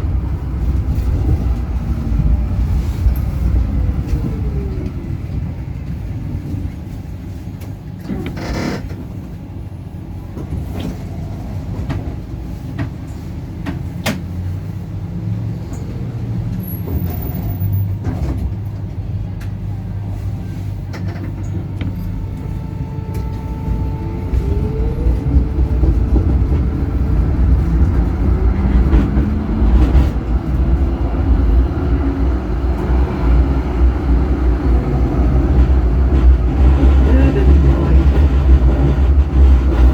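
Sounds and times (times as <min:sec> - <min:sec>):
low rumble: 0:00.0 - 0:07.4, 0:19.7 - 0:39.9
tram motor whine: 0:00.0 - 0:39.9.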